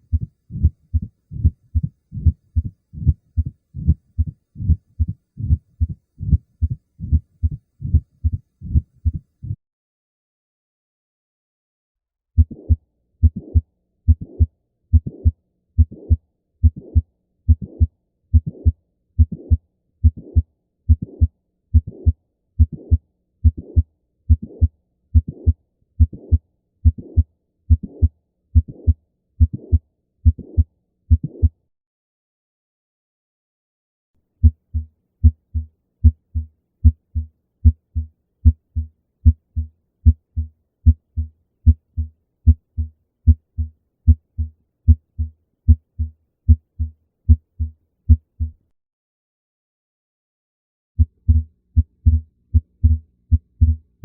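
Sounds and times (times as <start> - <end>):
heartbeat: 0.1 - 9.6, 12.4 - 31.5, 34.4 - 48.6, 51.0 - 54.0.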